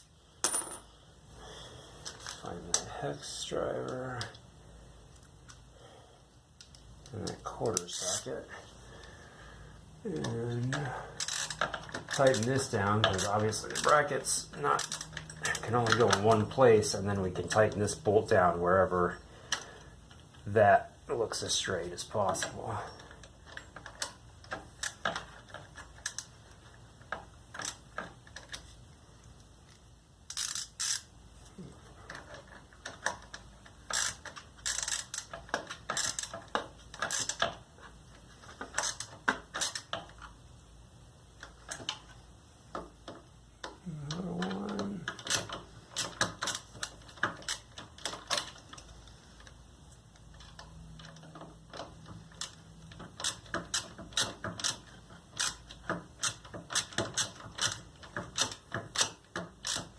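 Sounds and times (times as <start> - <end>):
tool clinking against metal: 0.4 - 0.9
socket ratchet clicking: 30.3 - 31.1, 32.2 - 37.6, 38.7 - 40.3, 45.1 - 48.9, 50.2 - 59.9.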